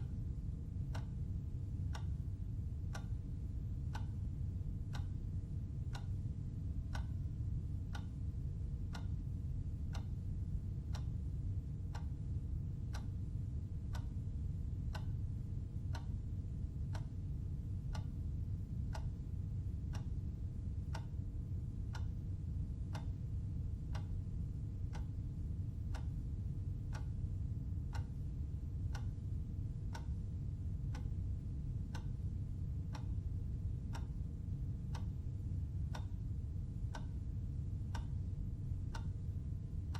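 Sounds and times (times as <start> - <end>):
low steady hum: 0.0 - 39.9
clock ticking: 0.8 - 1.2, 1.9 - 2.2, 2.9 - 4.2, 4.8 - 7.3, 7.9 - 8.2, 8.9 - 9.2, 9.9 - 10.2, 10.8 - 12.2, 12.8 - 13.2, 13.9 - 15.2, 15.9 - 18.2, 18.8 - 19.2, 19.9 - 20.2, 20.8 - 21.2, 21.8 - 22.2, 22.8 - 26.2, 26.8 - 27.2, 27.9 - 29.3, 29.9 - 30.2, 30.8 - 32.2, 32.8 - 33.2, 33.9 - 37.2, 37.9 - 38.2, 38.9 - 39.3.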